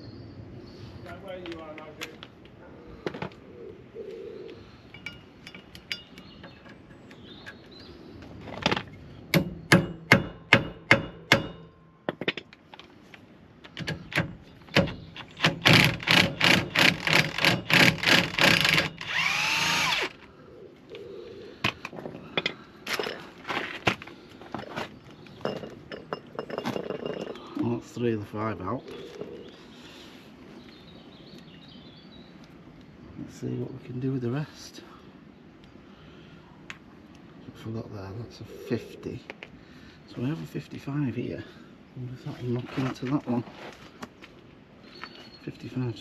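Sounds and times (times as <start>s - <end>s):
hammer striking metal: 9.3s - 12.3s.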